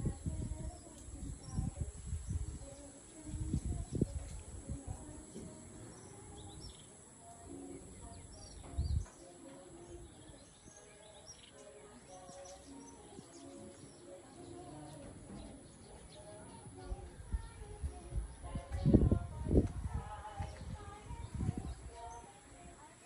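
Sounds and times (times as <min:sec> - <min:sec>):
wind rumble on microphone: 0:00.0 - 0:06.8, 0:08.0 - 0:09.1, 0:16.8 - 0:22.8
birds chirping: 0:00.0 - 0:23.0.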